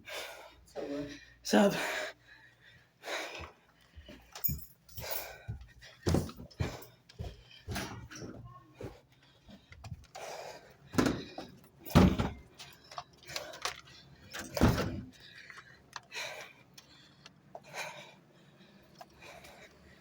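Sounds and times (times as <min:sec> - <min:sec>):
knocks and thumps: 0:06.0 - 0:09.0, 0:11.0 - 0:12.5.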